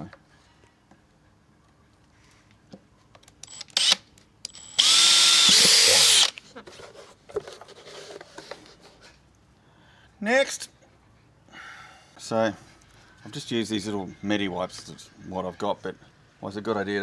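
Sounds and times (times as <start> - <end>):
power drill drilling: 3.8 - 4.0, 4.6 - 6.3.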